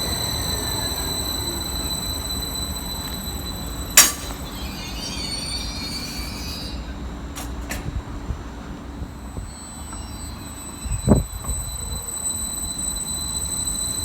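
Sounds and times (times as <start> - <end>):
train rumble: 0.0 - 14.0
wheels squealing on rails: 0.0 - 14.0
sharp loud clack: 4.0 - 4.6.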